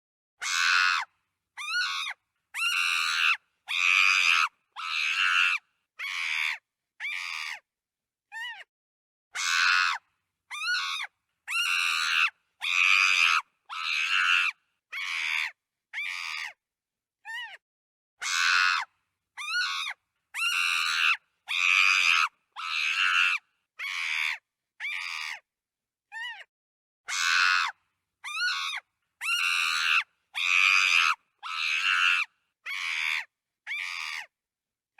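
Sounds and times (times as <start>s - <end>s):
chimpanzee screaming: 0.4s - 1.0s, 9.4s - 10.0s, 27.1s - 27.7s, 28.3s - 34.3s.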